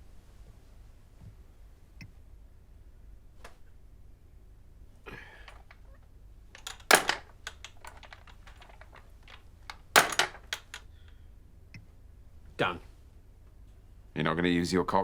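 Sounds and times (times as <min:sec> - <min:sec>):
hard knocks: 0:06.6 - 0:10.8.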